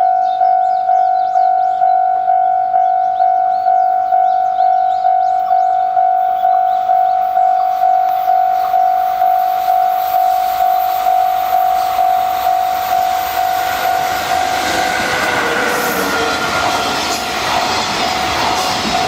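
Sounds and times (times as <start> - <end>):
level-crossing warning bell: 0.0 - 19.0
train wheels rushing and clattering: 9.6 - 19.0.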